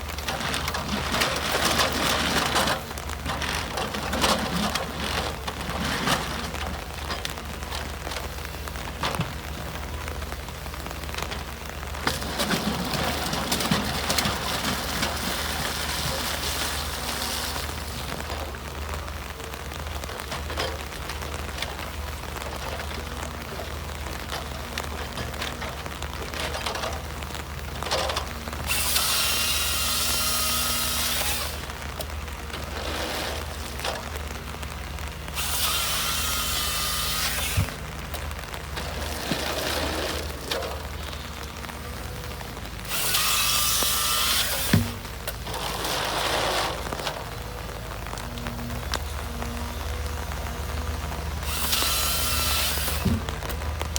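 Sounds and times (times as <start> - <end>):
harvester engine drone: 0.0 - 53.9
chainsaw cutting logs: 28.6 - 31.8, 34.9 - 40.8, 42.7 - 47.4, 49.6 - 53.9.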